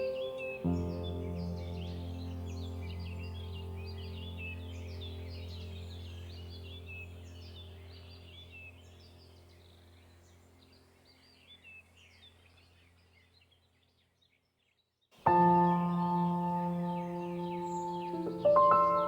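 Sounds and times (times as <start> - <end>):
ambient music drone: 0.0 - 10.5, 15.3 - 19.0
birdsong chirping: 0.0 - 19.0.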